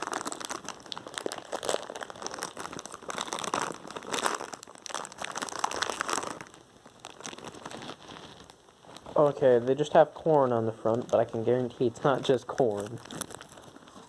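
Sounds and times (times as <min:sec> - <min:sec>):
plastic snack packet crinkling: 0:00.0 - 0:14.0.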